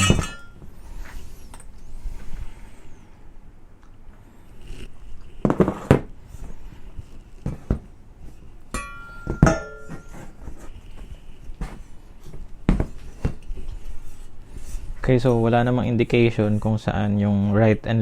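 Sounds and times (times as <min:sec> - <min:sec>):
metal parts knocking and clanking: 0:00.0 - 0:00.6
sharp metallic clinks: 0:00.0 - 0:00.6, 0:08.7 - 0:10.3.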